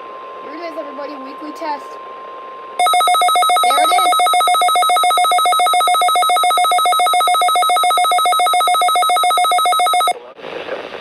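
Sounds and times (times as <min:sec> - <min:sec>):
pulsing electronic alert tone: 0:02.8 - 0:10.2.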